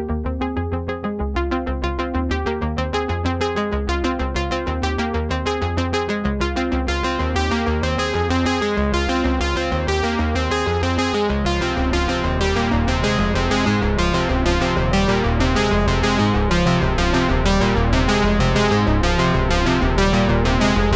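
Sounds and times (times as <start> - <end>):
bass line: 0.0 - 20.9
electronic synthesizer music: 9.0 - 20.9.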